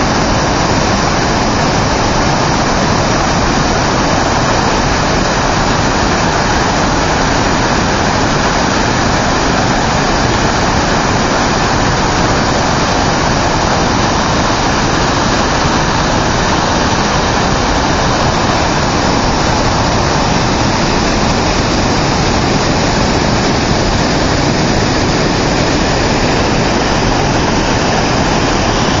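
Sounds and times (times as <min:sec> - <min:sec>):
floodwater rushing: 0:00.0 - 0:29.0.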